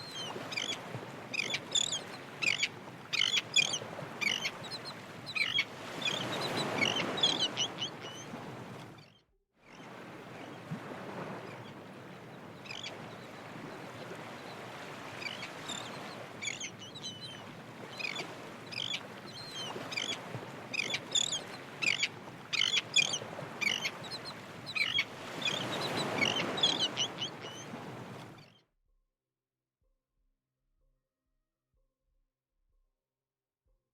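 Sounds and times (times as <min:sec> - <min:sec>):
birds chirping: 0:00.0 - 0:08.4, 0:12.3 - 0:27.8.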